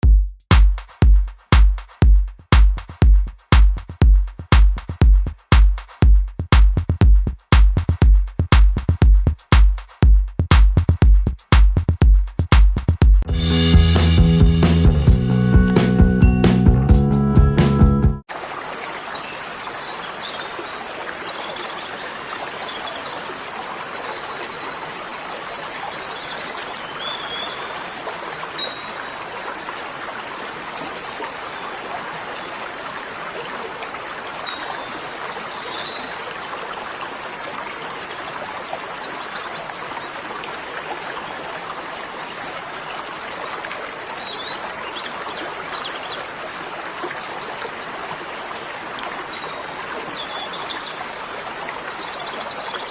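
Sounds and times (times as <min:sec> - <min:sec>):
flowing water rushing: 0:18.3 - 0:52.9.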